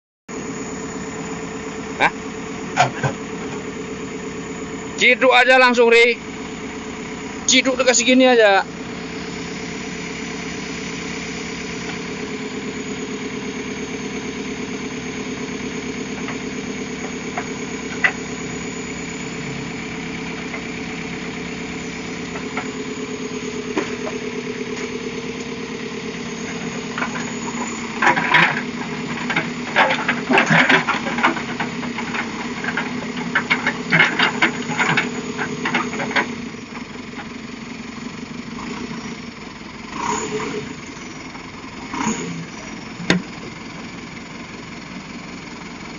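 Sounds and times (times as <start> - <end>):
diesel engine running: 0.3 - 45.9
rapid clanks and knocks: 26.9 - 37.3.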